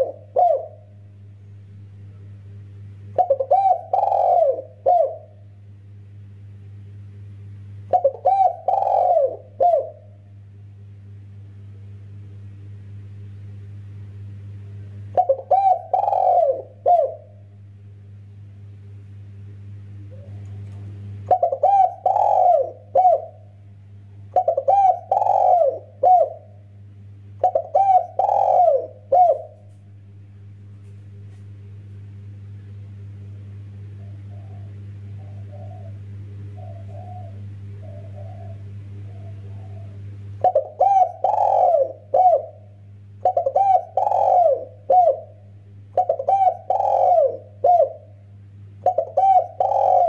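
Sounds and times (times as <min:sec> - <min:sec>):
dove cooing: 0:00.0 - 0:01.0, 0:03.1 - 0:05.4, 0:07.9 - 0:10.2, 0:15.1 - 0:17.4, 0:20.1 - 0:20.6, 0:21.2 - 0:23.5, 0:24.3 - 0:26.7, 0:27.4 - 0:29.7, 0:33.9 - 0:48.2, 0:48.8 - 0:50.0
steady low hum: 0:00.0 - 0:50.0.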